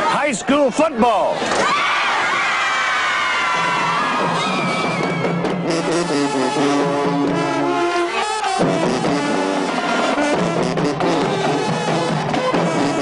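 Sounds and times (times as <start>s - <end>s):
drums: 3.0s - 13.0s
marching band playing: 3.6s - 13.0s
brass: 5.5s - 13.0s.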